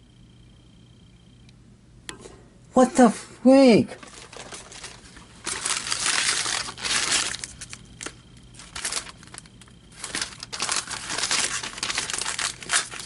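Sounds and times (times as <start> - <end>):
packaging crinkling: 3.9 - 13.0.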